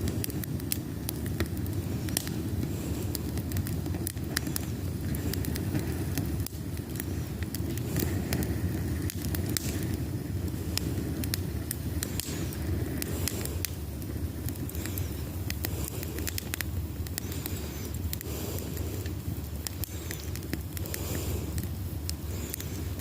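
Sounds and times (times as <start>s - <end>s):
fire crackling: 0.0s - 23.0s
steady low rumble: 0.0s - 23.0s
pops and snaps: 9.0s - 10.0s, 14.6s - 22.8s.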